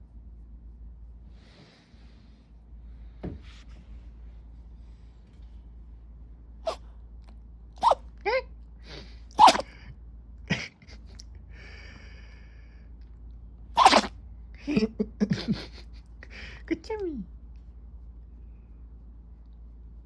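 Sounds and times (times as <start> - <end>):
dog sneezing: 7.8 - 8.0, 9.3 - 9.7, 13.8 - 14.1.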